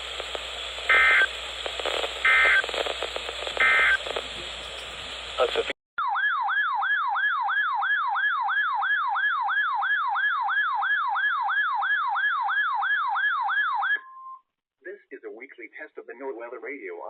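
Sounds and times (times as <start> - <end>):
whooping electronic siren: 6.0 - 14.1.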